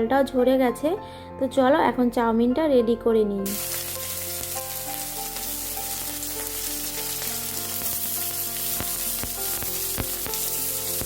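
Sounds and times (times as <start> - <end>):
vegetables sizzling in oil: 3.5 - 11.0.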